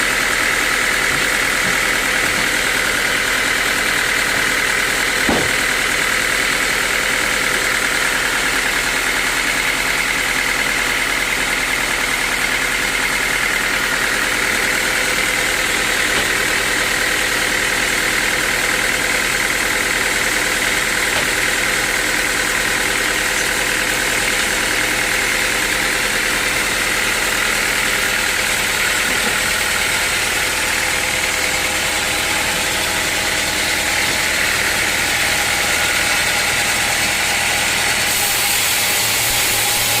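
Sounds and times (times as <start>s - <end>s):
motor drone: 15.5s - 40.0s
high-pitched machine whine: 30.0s - 40.0s.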